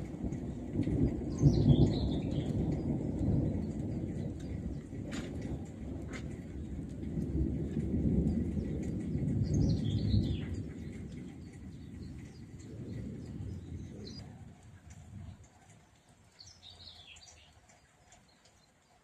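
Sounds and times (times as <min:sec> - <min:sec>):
distant thunder rumble: 0:00.0 - 0:17.5
bird chirping: 0:01.3 - 0:02.8, 0:09.4 - 0:14.3, 0:15.2 - 0:19.0.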